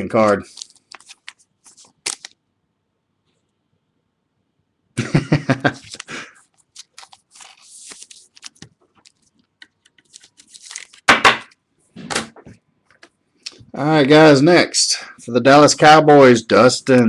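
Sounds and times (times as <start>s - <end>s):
trading cards rustling and clicking: 0.1s - 2.4s, 5.8s - 11.6s.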